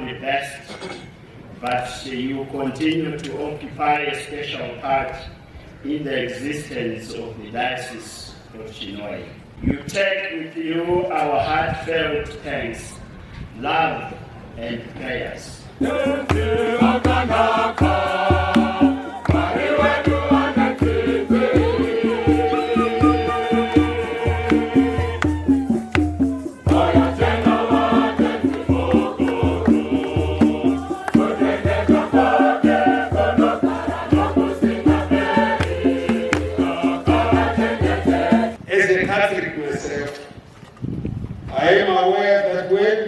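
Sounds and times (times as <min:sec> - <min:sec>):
choir singing: 0:15.8 - 0:38.6
sharp percussion clicks: 0:15.8 - 0:38.6
steady drum beat: 0:15.8 - 0:38.6.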